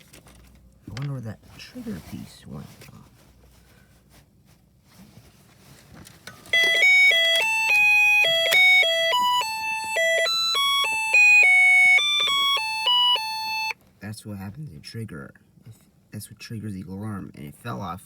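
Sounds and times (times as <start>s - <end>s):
electronic alarm beeping tune: 6.5s - 13.8s.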